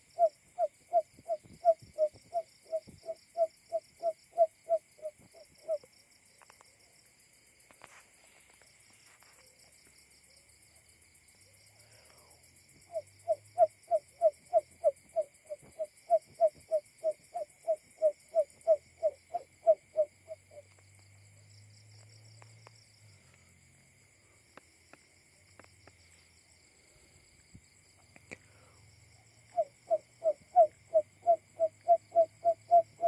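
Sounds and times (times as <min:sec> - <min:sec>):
bird hooting call: 0:00.0 - 0:05.9, 0:12.9 - 0:20.7, 0:29.5 - 0:33.0
insect trilling: 0:00.0 - 0:06.6, 0:12.0 - 0:22.8, 0:27.0 - 0:33.0.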